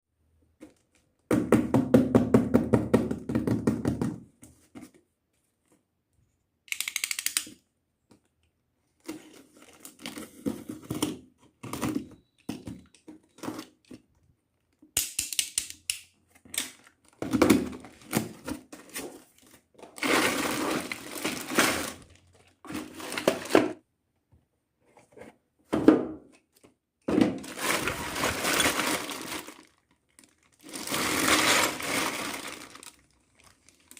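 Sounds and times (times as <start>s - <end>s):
plastic toy pieces clicking: 6.7s - 7.6s, 15.0s - 16.8s
packaging crinkling and tearing: 16.5s - 23.7s, 27.4s - 33.9s
plastic pieces knocking: 19.8s - 23.8s, 27.0s - 29.9s, 30.6s - 33.1s.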